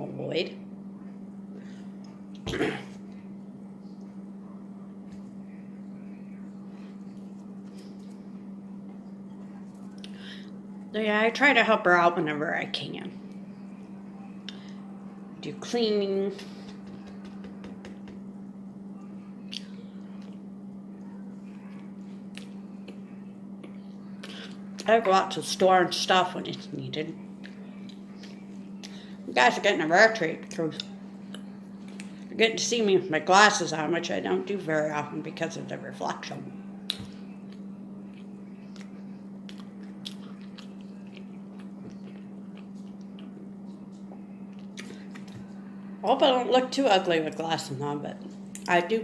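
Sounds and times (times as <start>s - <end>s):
steady low hum: 0.0s - 49.0s
person chewing food: 36.9s - 45.4s.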